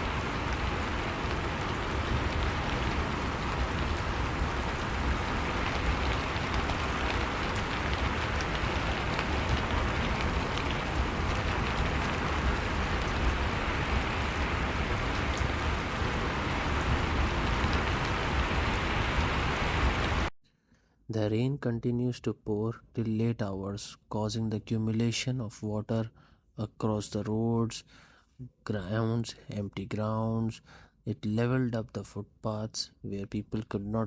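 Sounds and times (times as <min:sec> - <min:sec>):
heavy rain on hard surfaces: 0:00.0 - 0:20.3.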